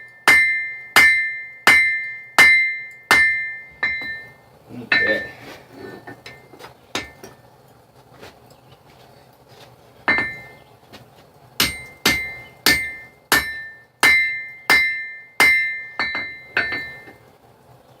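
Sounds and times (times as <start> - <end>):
anvil ringing: 0.0 - 5.4, 6.1 - 7.4, 10.1 - 10.6, 11.6 - 17.2
hammer striking on anvil: 0.2 - 4.3, 4.9 - 5.4, 7.0 - 7.4, 10.1 - 10.5, 11.6 - 17.2.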